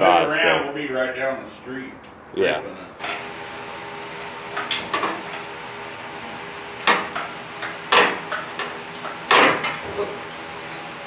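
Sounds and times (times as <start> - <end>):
steady background hum: 0.0 - 11.0
loud ringing knocks: 6.8 - 10.6.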